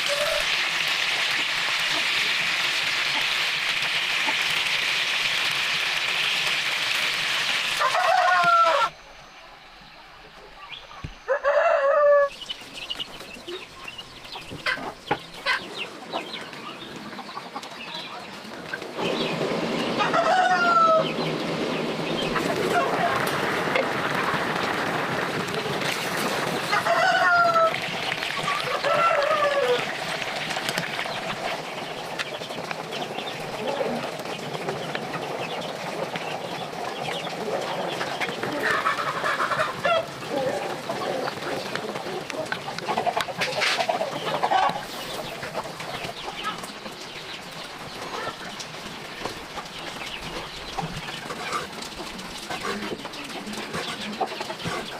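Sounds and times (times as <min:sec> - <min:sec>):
chickens clucking: 0:00.0 - 0:09.1, 0:09.8 - 0:54.9
rooster crowing: 0:07.8 - 0:09.0, 0:11.3 - 0:12.4, 0:20.0 - 0:21.2, 0:26.7 - 0:27.8, 0:28.7 - 0:29.9
birds chirping: 0:08.1 - 0:54.9.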